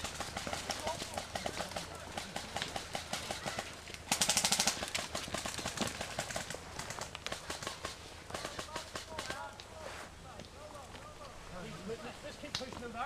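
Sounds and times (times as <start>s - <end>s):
airsoft guns firing full-auto: 0.0s - 9.4s.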